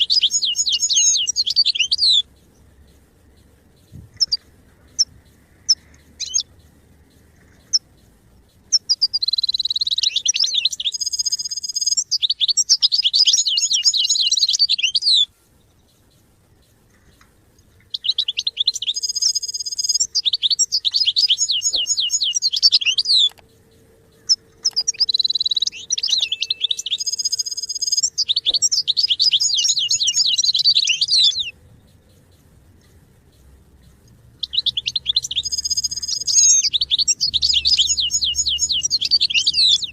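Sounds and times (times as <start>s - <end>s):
goldfinch twittering song: 0.0s - 39.9s
goldfinch call notes: 17.9s - 23.5s, 24.1s - 31.6s, 34.4s - 39.9s.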